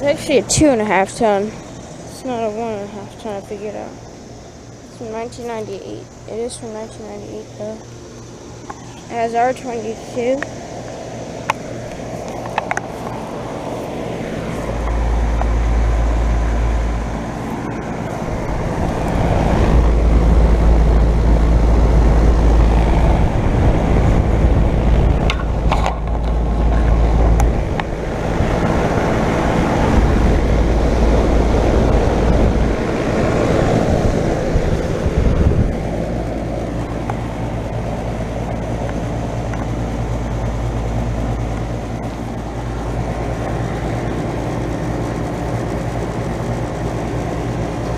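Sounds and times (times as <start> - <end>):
air conditioner compressor hum: 0.0 - 47.9
condenser fan rushing: 0.0 - 47.9
deep rumbling: 11.7 - 46.0.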